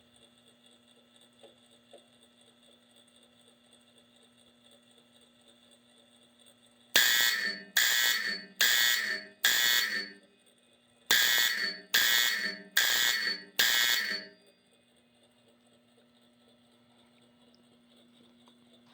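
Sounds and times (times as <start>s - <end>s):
fire alarm bell strokes: 7.0s - 10.3s, 11.1s - 14.6s.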